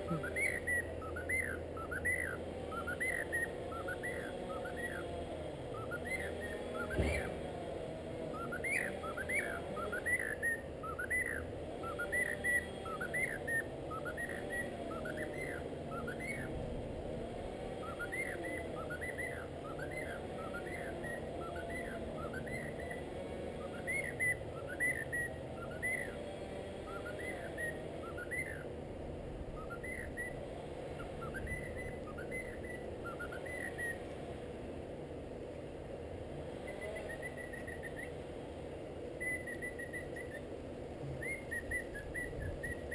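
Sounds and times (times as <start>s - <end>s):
cockatiel chirping and whistling: 0.2s - 5.0s, 5.7s - 7.3s, 8.4s - 16.5s, 17.8s - 23.0s, 23.8s - 26.1s, 27.0s - 28.6s, 29.6s - 30.4s, 31.2s - 34.0s, 39.2s - 40.4s, 41.2s - 42.9s.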